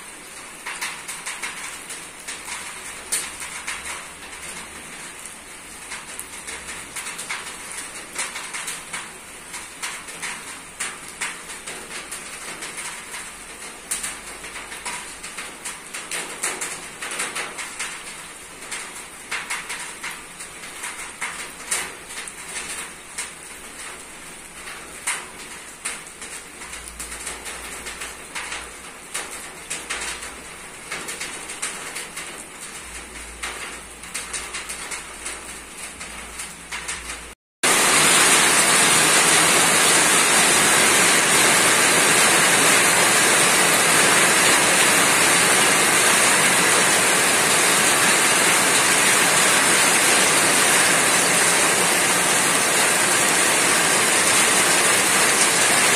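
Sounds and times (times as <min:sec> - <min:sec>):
raindrops tapping on roof: 0:00.0 - 0:55.9
heavy rain hiss: 0:37.6 - 0:55.9.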